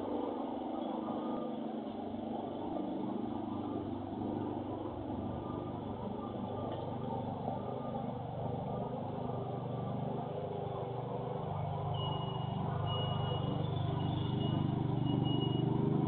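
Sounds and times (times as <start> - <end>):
low mechanical hum: 0.0 - 16.0
high broken alarm beeping: 11.9 - 15.7.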